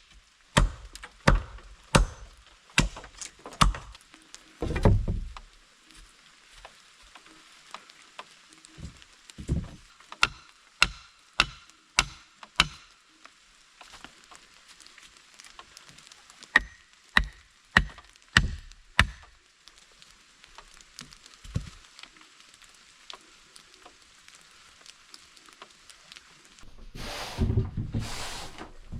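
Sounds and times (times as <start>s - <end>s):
wood being chopped: 0.6s - 4.0s, 10.2s - 12.9s, 16.5s - 19.3s.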